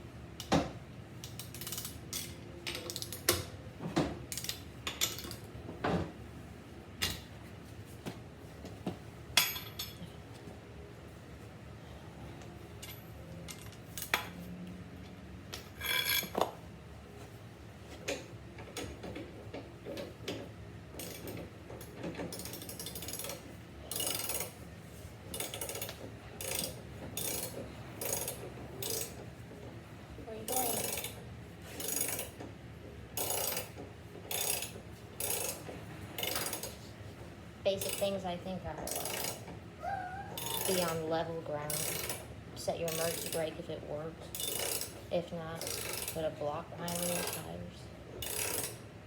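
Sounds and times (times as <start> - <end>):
metal hand tools ratcheting: 22.3 - 24.5, 30.5 - 31.2, 38.9 - 39.4, 40.4 - 41.0, 41.7 - 42.2, 42.9 - 43.5, 44.3 - 45.0, 45.6 - 46.2, 46.9 - 47.5, 48.2 - 48.8.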